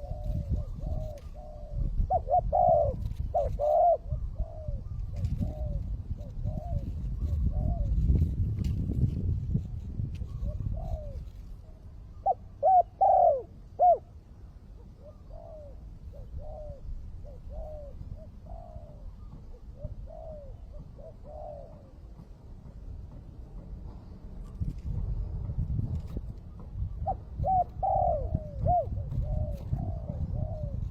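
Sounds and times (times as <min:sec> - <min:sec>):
dove cooing: 0:00.0 - 0:08.3, 0:10.2 - 0:22.2, 0:26.9 - 0:30.9.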